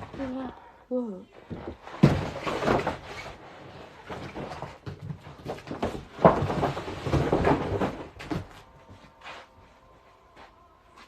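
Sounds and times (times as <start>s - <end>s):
cardboard packaging knocking and rustling: 1.5s - 3.4s, 4.0s - 8.8s.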